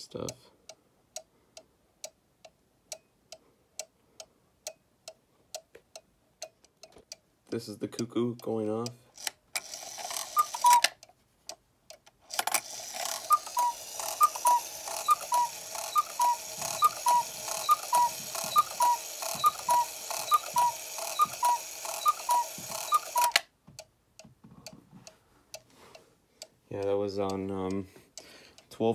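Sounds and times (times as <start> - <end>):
clock mechanism whirring and clicking: 9.2 - 11.1, 12.3 - 23.4
cuckoo clock call: 9.6 - 11.0, 12.6 - 23.4.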